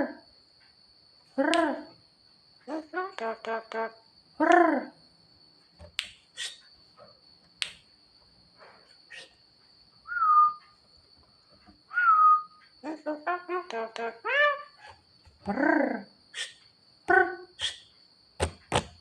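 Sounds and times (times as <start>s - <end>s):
sharp bird clicks: 5.8s - 6.7s, 7.6s - 7.9s, 9.1s - 9.4s, 16.4s - 16.6s
whistled sliding notes: 10.1s - 10.7s, 11.9s - 12.6s.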